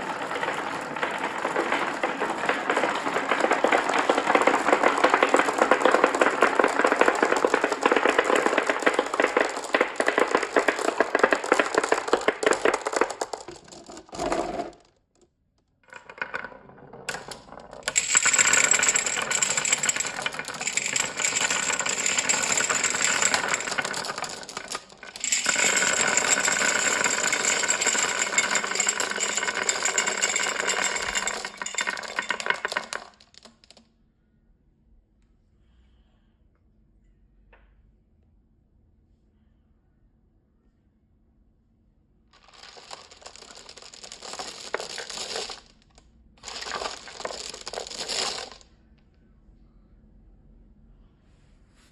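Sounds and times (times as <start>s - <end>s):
marbles clattering down a marble run: 0.0s - 14.8s, 15.9s - 33.8s, 42.4s - 48.7s.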